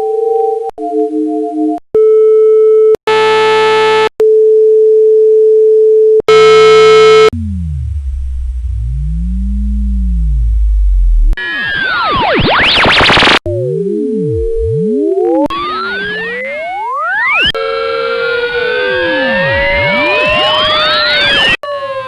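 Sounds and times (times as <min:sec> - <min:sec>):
harsh buzzy tone: 0:06.3 - 0:21.6
low electronic hum: 0:06.4 - 0:11.4, 0:12.6 - 0:20.6
steady pure tone: 0:06.4 - 0:11.4
sweeping electronic tone: 0:07.0 - 0:21.6.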